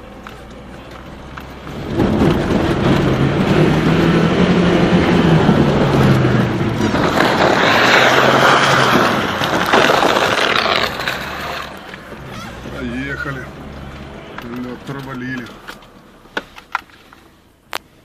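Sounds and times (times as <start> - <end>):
car engine pulling under load: 0.0 - 17.8
tyres crunching through ice and slush: 5.3 - 12.5.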